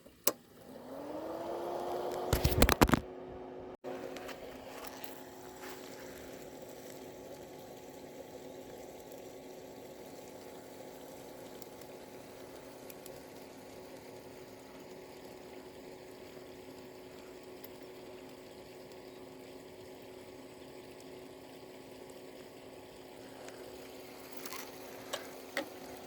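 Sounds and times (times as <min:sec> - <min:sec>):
electric motor whine: 0:00.5 - 0:03.1.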